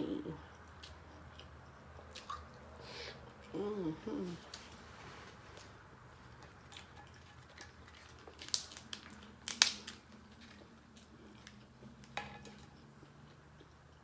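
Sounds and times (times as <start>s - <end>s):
crab shell cracking: 7.6s - 10.6s.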